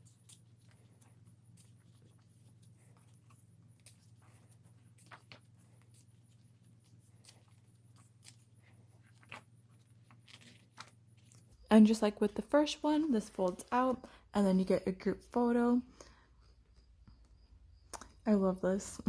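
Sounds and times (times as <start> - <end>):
paper pages rustling and tapping: 0.0 - 11.6
faint low hum: 0.0 - 19.0.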